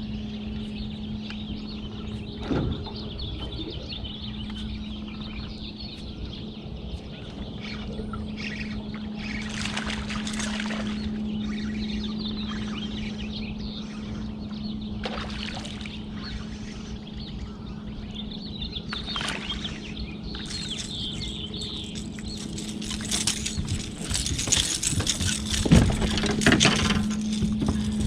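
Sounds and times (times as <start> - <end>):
birds chirping: 0.0 - 28.0
boat motor humming: 0.0 - 28.0
sharp clicks and rattles: 20.3 - 28.0.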